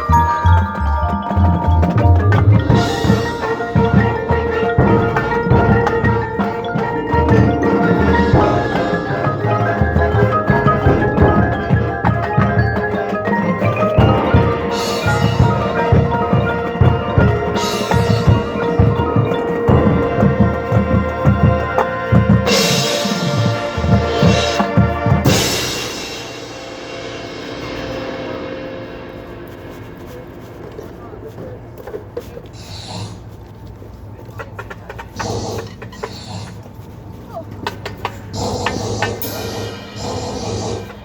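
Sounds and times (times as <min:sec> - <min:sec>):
marching band playing: 0:00.0 - 0:32.2
marimba and xylophone: 0:00.0 - 0:32.4, 0:37.8 - 0:41.0
cymbal crashes: 0:22.4 - 0:31.2.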